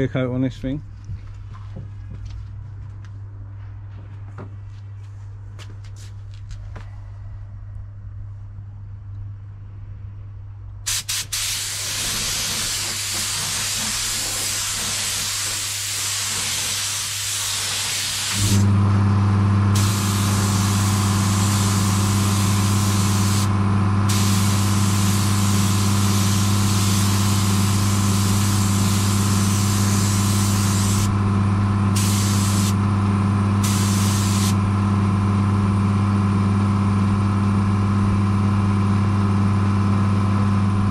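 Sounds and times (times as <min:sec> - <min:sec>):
spray gun hissing: 0:10.9 - 0:18.7, 0:19.8 - 0:23.5, 0:24.1 - 0:31.1, 0:32.0 - 0:32.8, 0:33.6 - 0:34.6
air compressor motor humming: 0:10.9 - 0:40.9.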